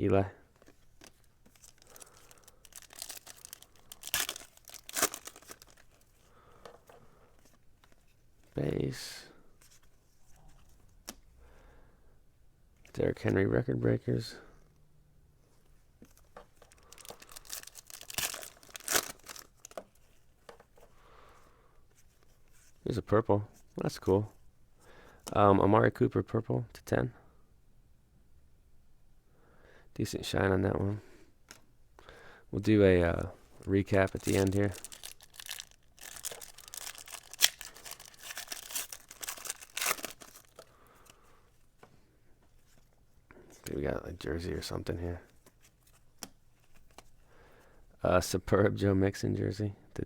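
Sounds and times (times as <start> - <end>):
card pack wrapper tearing: 1.0 - 6.0, 16.7 - 19.8, 33.7 - 40.6.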